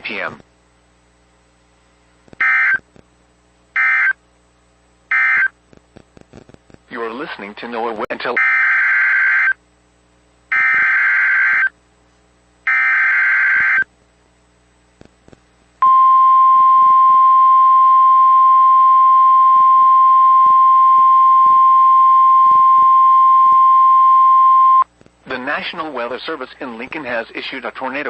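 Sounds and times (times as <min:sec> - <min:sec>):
steady warning alarm tone: 0:02.4 - 0:02.8, 0:03.8 - 0:04.2, 0:05.1 - 0:05.5, 0:08.4 - 0:09.6, 0:10.5 - 0:11.7, 0:12.7 - 0:13.9.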